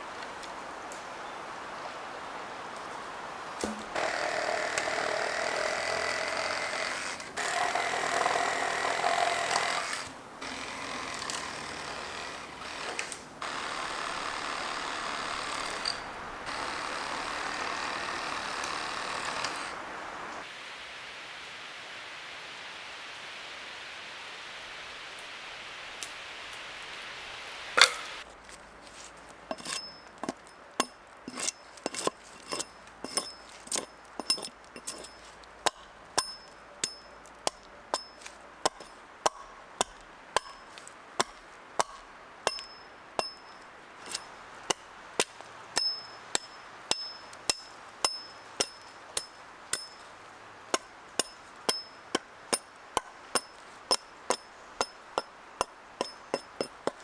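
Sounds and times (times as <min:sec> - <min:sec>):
hand tool striking metal: 0:29.5 - 0:50.0, 0:50.7 - 0:57.0.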